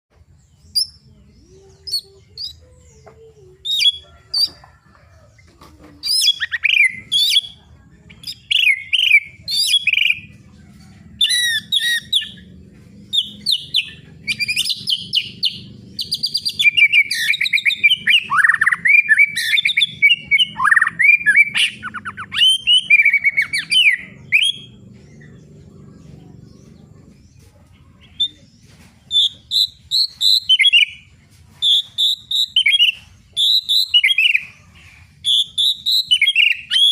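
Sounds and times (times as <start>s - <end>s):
faint low hum: 0.1s - 36.9s
bird singing whistles: 29.1s - 31.0s, 31.6s - 34.5s, 35.2s - 36.9s.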